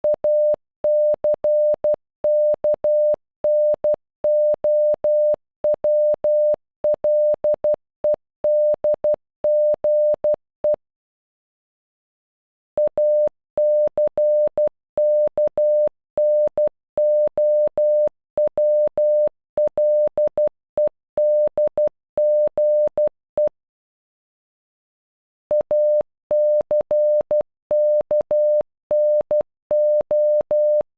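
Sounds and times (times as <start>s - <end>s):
morse code beeps: 0.0s - 7.8s, 12.8s - 23.5s, 25.5s - 30.9s.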